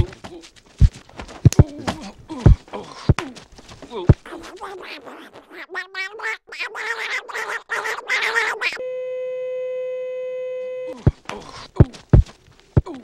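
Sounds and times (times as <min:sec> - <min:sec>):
squawking quacking sounds: 0:04.2 - 0:08.8.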